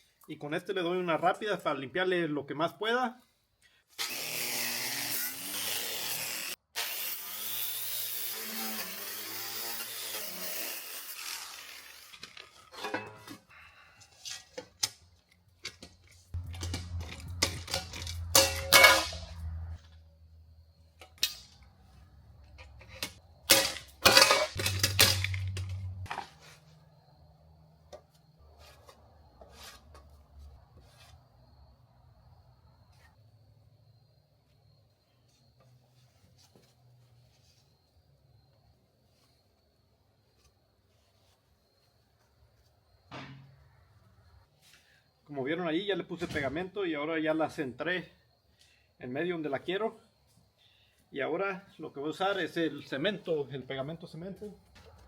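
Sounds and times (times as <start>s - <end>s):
wire brush scrubbing metal: 4.3s - 13.1s.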